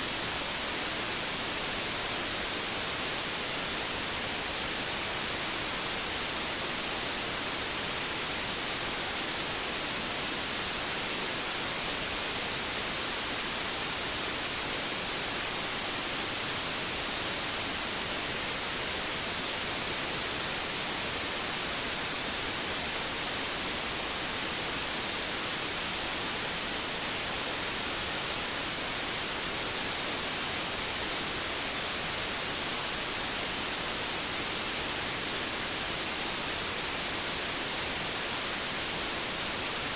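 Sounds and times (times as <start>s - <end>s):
white noise hiss: 0.0s - 39.9s.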